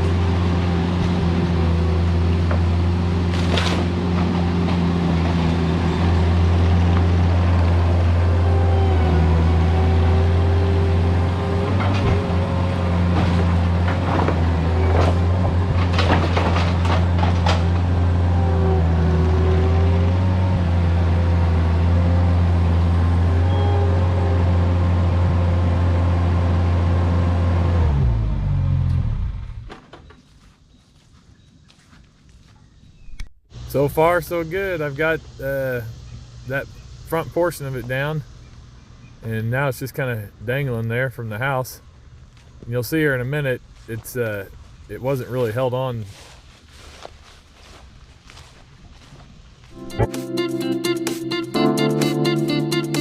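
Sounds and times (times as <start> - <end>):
skid steer engine with hydraulic whine: 0.0 - 30.3
timber breaking cracks: 3.3 - 5.3, 13.2 - 17.9.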